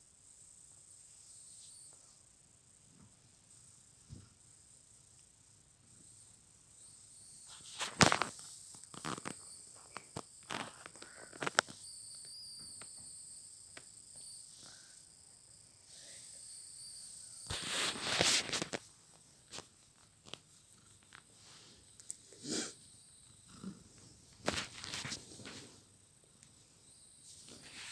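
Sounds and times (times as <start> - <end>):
faint high-pitched hum: 0.0 - 27.9
rustling: 7.4 - 13.0, 17.4 - 22.8, 23.5 - 27.9.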